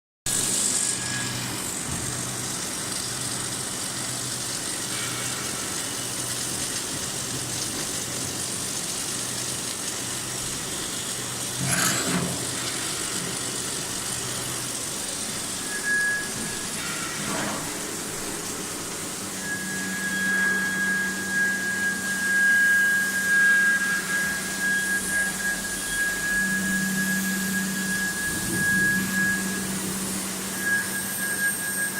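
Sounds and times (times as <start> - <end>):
welding machine hum and hiss: 0.3 - 31.9
steady high whine: 11.4 - 31.9.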